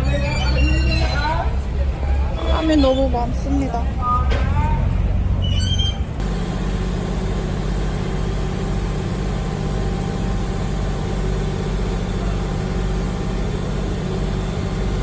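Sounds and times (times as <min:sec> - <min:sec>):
engine low rumble: 0:00.0 - 0:15.0
high whine: 0:06.2 - 0:15.0.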